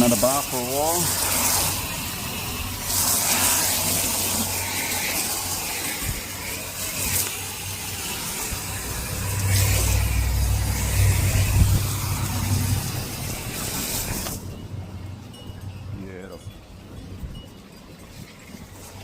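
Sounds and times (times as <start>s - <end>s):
water jet hissing: 0.0s - 14.8s.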